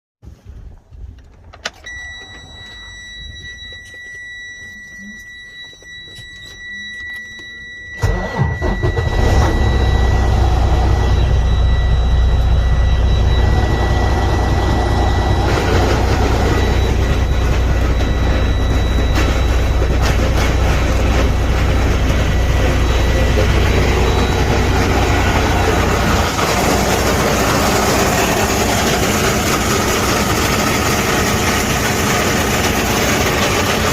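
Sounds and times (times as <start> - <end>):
high-pitched tone: 1.8 - 33.9
diesel truck engine running: 8.0 - 33.9.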